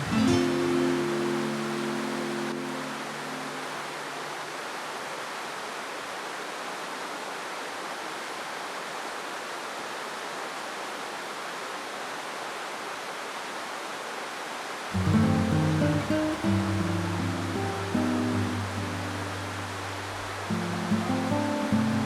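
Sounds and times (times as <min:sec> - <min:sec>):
acoustic guitar music: 0:00.0 - 0:04.4, 0:15.0 - 0:22.0
running water: 0:00.0 - 0:22.0.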